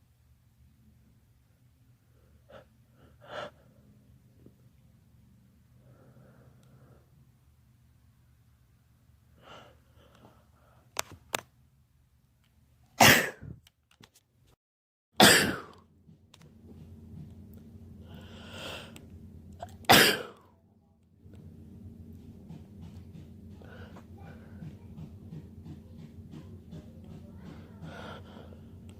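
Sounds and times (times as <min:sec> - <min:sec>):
man sneezing: 0:13.0 - 0:13.6, 0:19.9 - 0:20.4
drawn-in breath: 0:18.0 - 0:19.0.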